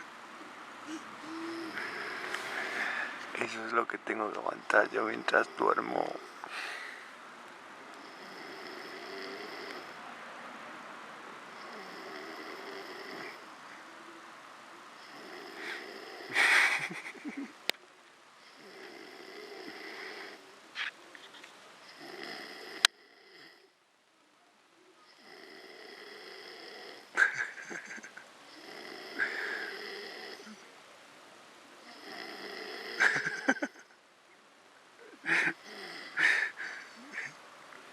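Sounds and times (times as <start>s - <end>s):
person snoring: 0.9s - 3.2s, 8.0s - 10.0s, 11.6s - 13.4s, 15.0s - 17.2s, 18.5s - 20.4s, 21.9s - 23.7s, 25.2s - 30.6s, 31.8s - 33.7s, 35.1s - 37.4s.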